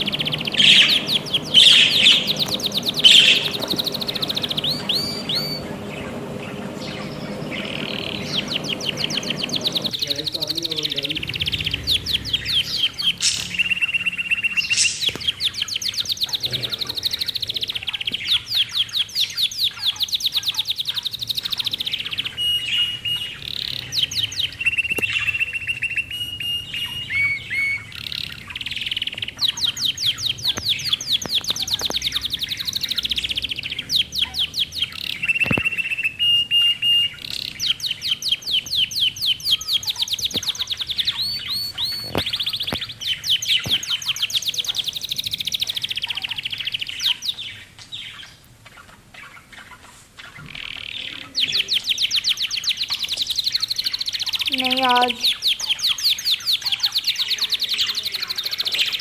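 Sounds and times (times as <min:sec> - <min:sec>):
held whistling notes: 0:00.0 - 0:10.7
budgerigars chirping: 0:00.0 - 0:59.0.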